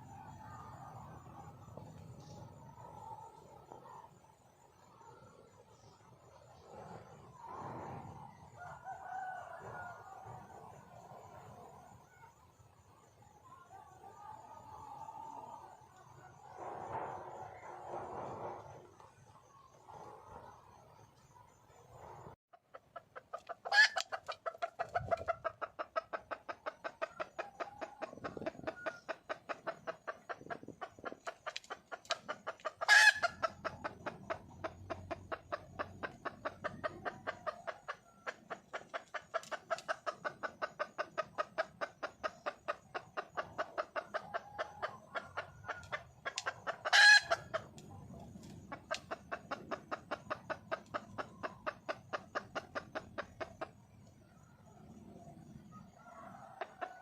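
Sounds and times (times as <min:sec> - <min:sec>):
junglefowl hen clucking: 0:04.8 - 0:20.8, 0:21.4 - 0:57.0
loud sharp hen call: 0:23.6 - 0:25.6, 0:32.1 - 0:33.7, 0:44.2 - 0:47.7.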